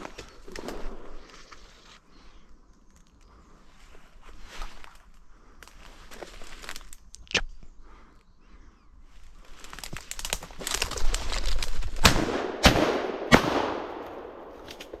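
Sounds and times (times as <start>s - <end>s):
brush crackling and rustling: 0.0s - 2.0s, 3.7s - 7.1s, 9.2s - 12.2s
shotgun shots: 12.0s - 14.6s.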